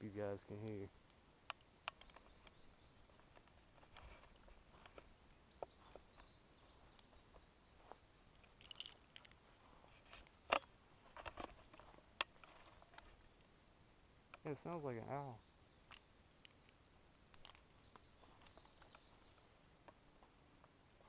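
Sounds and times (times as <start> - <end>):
sharp ticks and snaps: 0.6 - 6.3, 8.3 - 13.5, 14.3 - 14.6, 15.8 - 20.0
faint high bird chirps: 1.4 - 3.7, 4.7 - 8.0, 9.6 - 10.3, 13.8 - 19.5.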